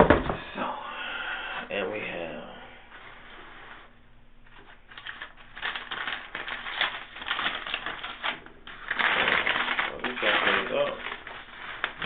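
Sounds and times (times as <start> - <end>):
paper wrapping crinkling: 3.0 - 12.0.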